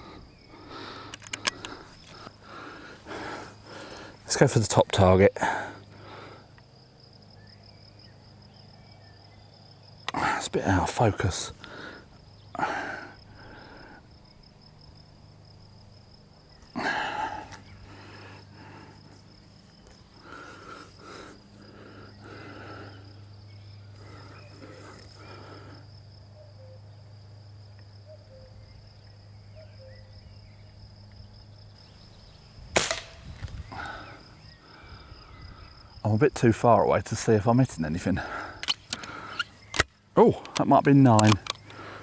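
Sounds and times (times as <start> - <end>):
crickets chirping: 0.0 - 42.0
air rifle handling clicks: 0.9 - 2.3, 32.8 - 33.7, 38.6 - 42.0
air rifle firing crack: 32.8 - 33.6.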